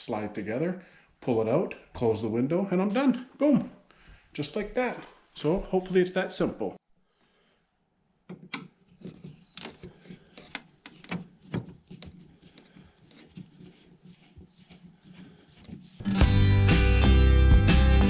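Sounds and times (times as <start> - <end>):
strummed acoustic guitar music: 16.0 - 18.0.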